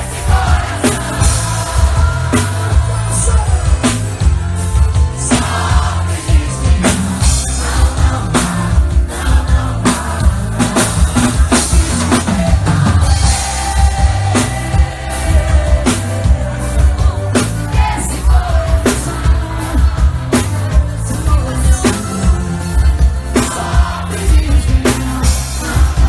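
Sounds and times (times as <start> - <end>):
live band music with drums: 0.0 - 26.0.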